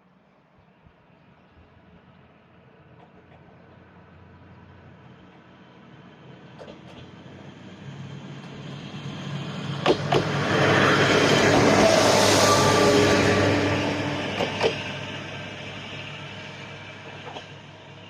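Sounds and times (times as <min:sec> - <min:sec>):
diesel railcar rumbling: 0:00.1 - 0:18.0
wheels clacking on rail joint: 0:06.4 - 0:07.4, 0:09.7 - 0:12.8, 0:13.7 - 0:15.2, 0:17.0 - 0:17.6.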